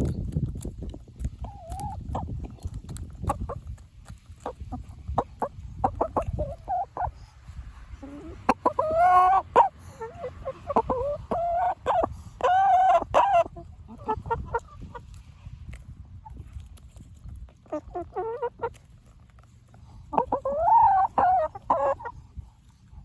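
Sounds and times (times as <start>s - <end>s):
chickens clucking: 0.0s - 23.0s
chicken drawn-out calls: 4.4s - 15.0s, 17.6s - 18.9s, 19.7s - 22.2s.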